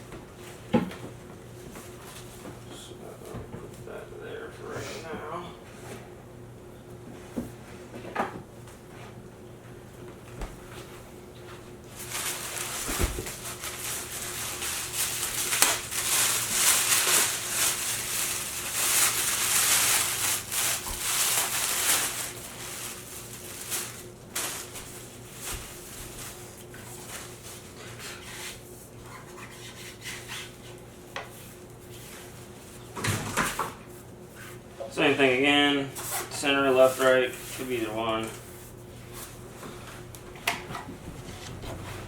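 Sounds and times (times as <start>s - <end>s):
packaging rustling and scraping: 11.9s - 30.9s.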